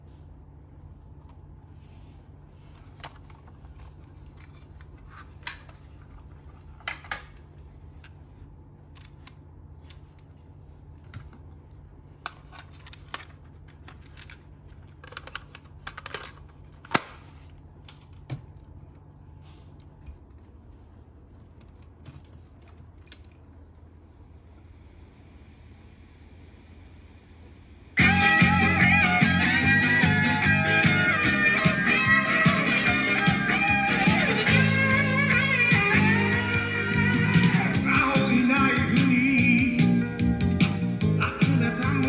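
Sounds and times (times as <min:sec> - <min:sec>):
steady low hum: 0:00.0 - 0:42.0
plastic cassette clicks: 0:02.8 - 0:08.2, 0:08.9 - 0:10.2, 0:12.2 - 0:18.3.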